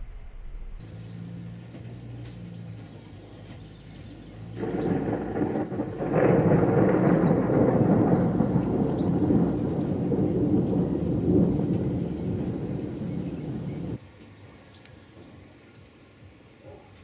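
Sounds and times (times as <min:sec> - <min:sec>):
rain falling: 0:00.8 - 0:16.6
thunder rumbling: 0:04.3 - 0:14.0.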